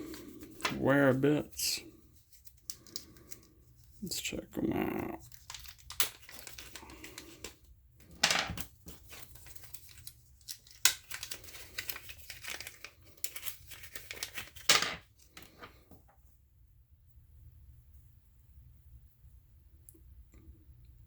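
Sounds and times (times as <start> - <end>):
packaging torn and crinkled: 5.2 - 7.5, 8.9 - 14.7.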